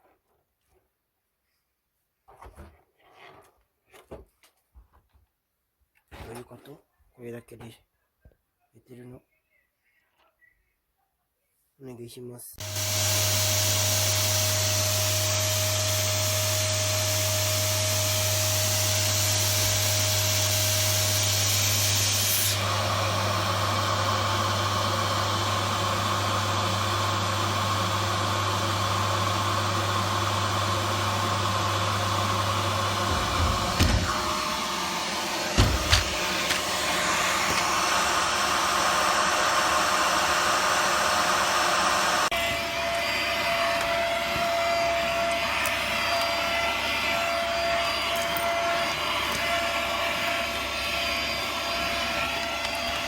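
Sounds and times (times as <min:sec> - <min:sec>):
vacuum motor whirring: 0:12.6 - 0:53.0.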